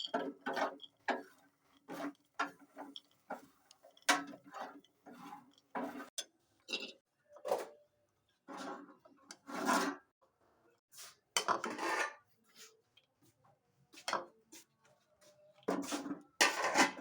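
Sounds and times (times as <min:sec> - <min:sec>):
spoon scraping a pan: 0:00.0 - 0:07.0, 0:15.7 - 0:17.0.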